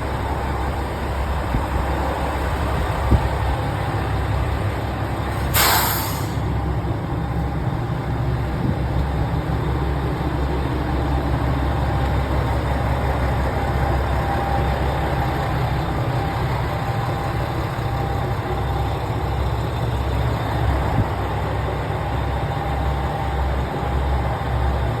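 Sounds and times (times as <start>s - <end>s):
train engine rumble: 0.0s - 25.0s
hiss burst: 5.3s - 6.6s.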